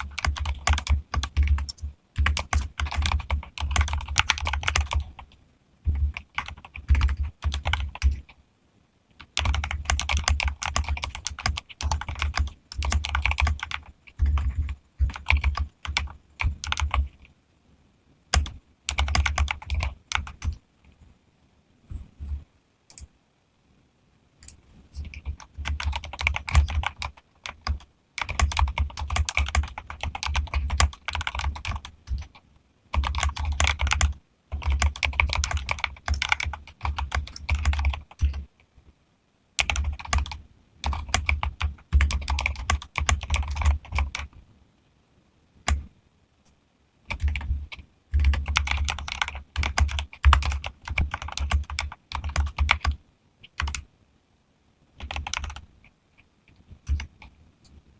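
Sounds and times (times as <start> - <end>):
fast typing on mechanical keyboard: 0.0 - 5.3, 5.9 - 8.4, 9.2 - 17.3, 18.3 - 20.6, 25.0 - 38.5, 39.6 - 44.4, 47.1 - 53.8, 55.0 - 55.6, 56.8 - 57.3.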